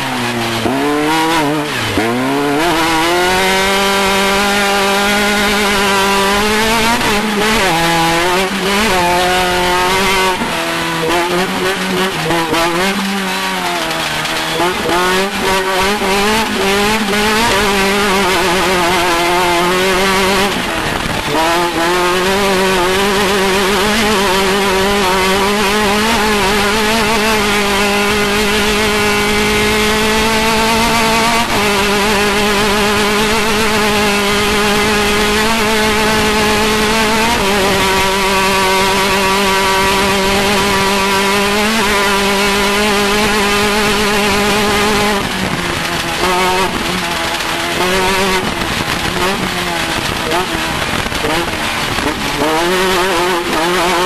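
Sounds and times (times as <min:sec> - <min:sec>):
race car engine revving: 0:00.0 - 0:54.0.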